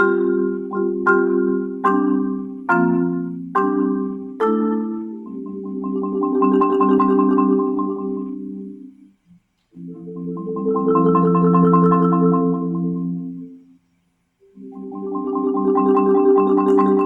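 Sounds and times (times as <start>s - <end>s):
marimba rolled chords: 0.0s - 9.0s, 9.8s - 13.7s, 14.5s - 17.0s.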